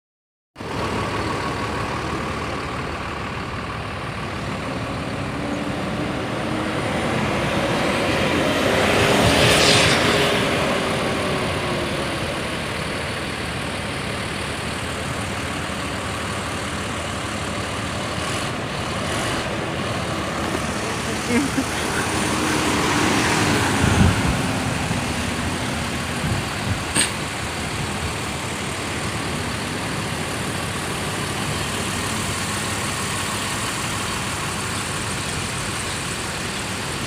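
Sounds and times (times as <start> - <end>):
racing engine passing: 5.6 - 12.2.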